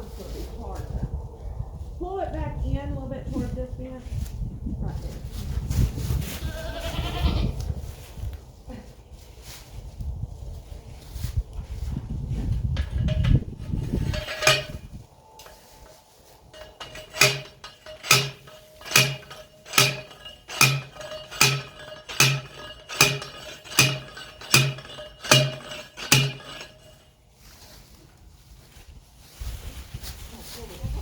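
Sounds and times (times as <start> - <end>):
post driver clanking on metal post: 12.8 - 27.1.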